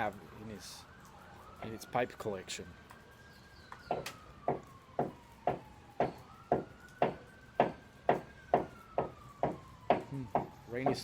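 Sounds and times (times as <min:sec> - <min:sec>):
distant siren wailing: 0:00.0 - 0:11.0
hammering on wood: 0:03.9 - 0:11.0.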